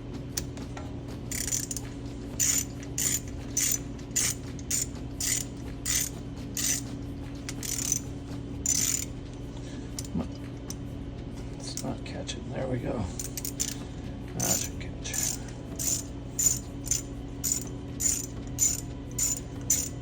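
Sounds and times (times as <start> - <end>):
steady low hum: 0.0 - 20.0
socket ratchet clicking: 1.3 - 6.9, 7.5 - 8.0, 8.7 - 9.1, 13.2 - 13.8, 14.4 - 20.0.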